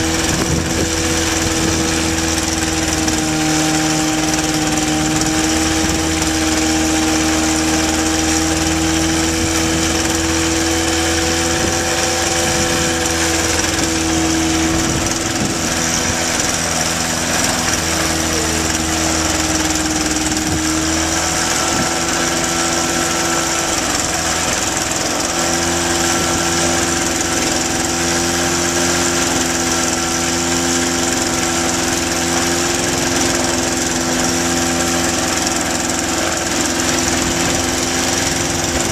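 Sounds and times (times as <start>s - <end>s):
light aircraft engine and propeller: 0.0s - 38.9s.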